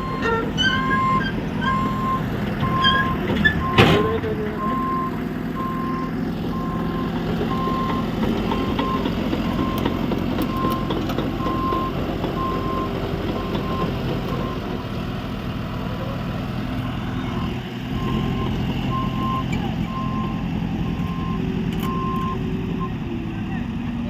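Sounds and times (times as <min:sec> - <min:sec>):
reverse alarm beeping: 0:00.0 - 0:14.7, 0:18.0 - 0:20.4, 0:21.0 - 0:22.9
bulldozer diesel engine rumbling: 0:00.0 - 0:24.0.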